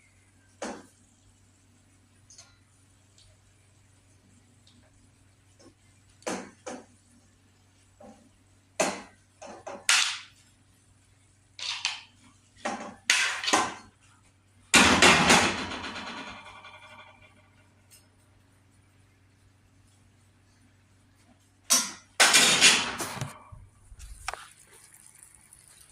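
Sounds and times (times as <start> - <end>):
metal cookware clattering: 12.7 - 13.9.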